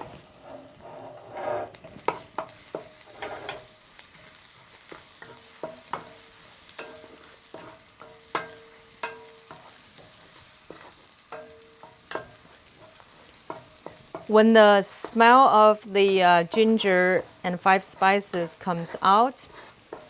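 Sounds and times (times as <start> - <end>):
spices sizzling in oil: 0.0 - 20.0
utensil scraping and knocking pan: 0.5 - 3.7, 4.6 - 15.3, 19.4 - 20.0.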